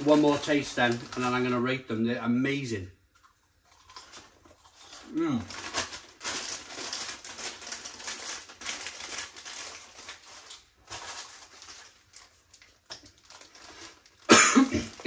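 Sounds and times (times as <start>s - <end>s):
crunching and chewing snack: 3.1s - 14.3s.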